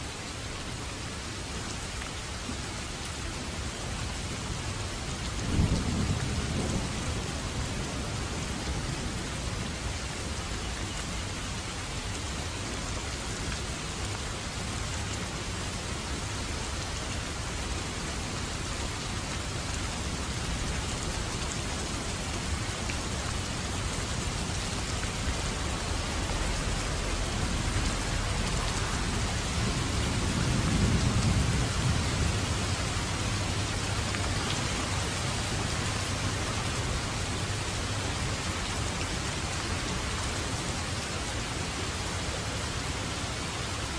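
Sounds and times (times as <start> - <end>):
dense rainfall: 0.0 - 43.9
low thunder rumble: 5.4 - 9.8, 20.0 - 38.2.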